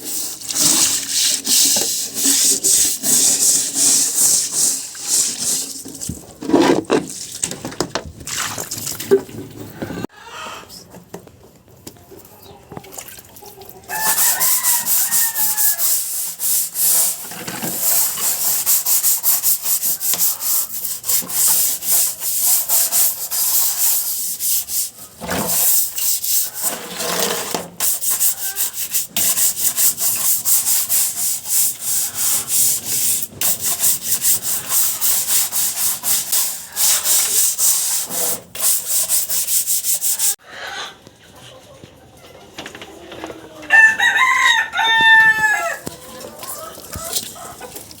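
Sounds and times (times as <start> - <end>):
scrubbing a tray: 0.0 - 9.4, 13.9 - 40.4, 46.0 - 48.0
chicken calling: 9.8 - 10.8, 13.4 - 16.0, 43.0 - 47.8.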